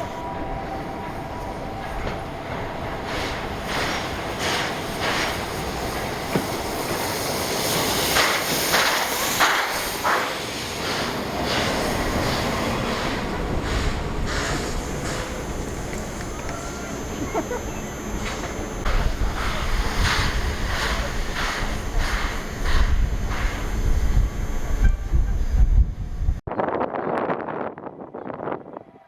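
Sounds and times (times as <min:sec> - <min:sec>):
train wheels clattering over rail joints: 0:01.9 - 0:07.2, 0:07.8 - 0:16.0.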